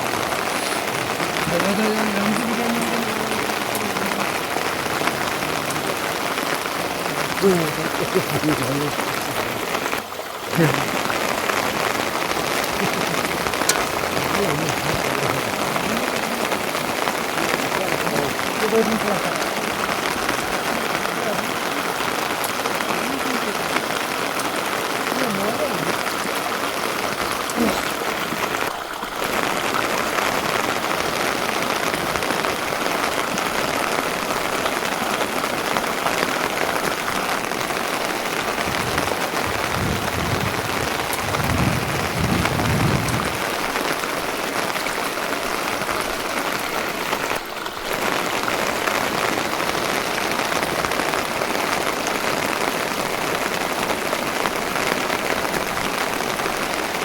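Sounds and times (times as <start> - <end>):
heavy rain falling: 0.0 - 57.0
low rumble: 38.6 - 43.4.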